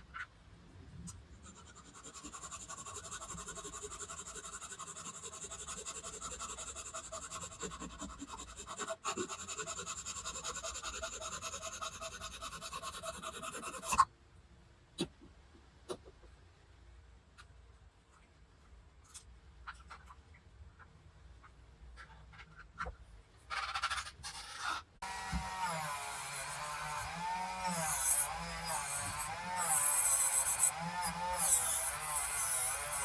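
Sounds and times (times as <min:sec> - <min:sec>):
electric tool motor buzzing: 0:25.0 - 0:33.0.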